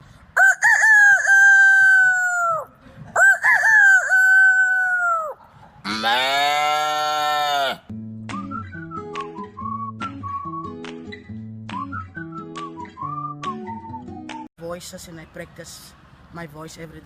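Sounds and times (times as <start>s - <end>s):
man imitating rooster crowing: 0.4s - 7.9s
music: 7.9s - 14.5s.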